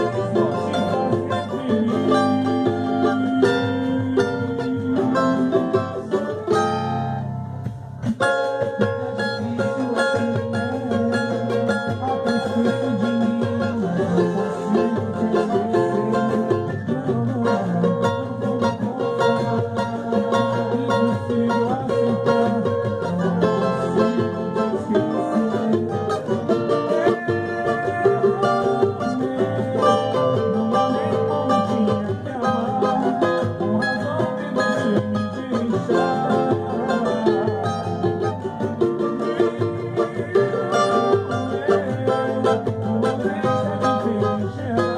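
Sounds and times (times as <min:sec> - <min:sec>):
plucked string instrumental music: 0:00.0 - 0:44.9.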